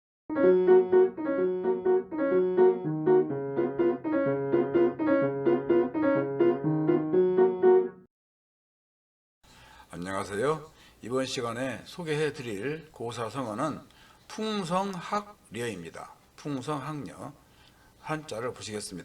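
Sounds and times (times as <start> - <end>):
piano tune: 0.3 - 8.1.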